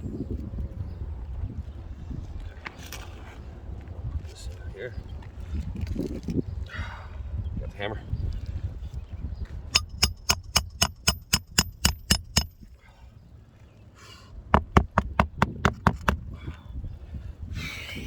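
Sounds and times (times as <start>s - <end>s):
hammer striking roofing nails: 9.8s - 12.6s, 14.6s - 16.2s.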